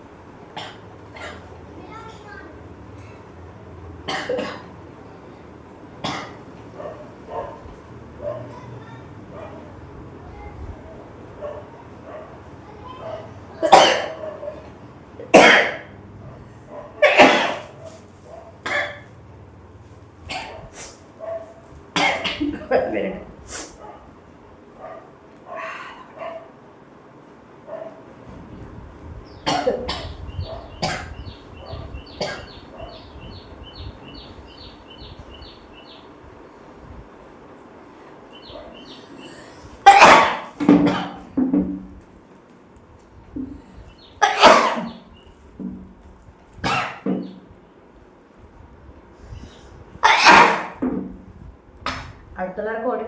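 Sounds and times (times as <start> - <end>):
woman sneezing: 17.0 - 17.7, 39.9 - 41.2, 50.0 - 50.8
woman sniffing: 20.7 - 21.1, 23.4 - 23.8.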